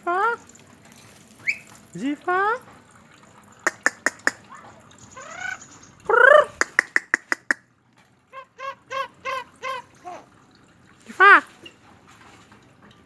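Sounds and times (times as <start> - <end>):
myna calling: 3.7 - 7.6.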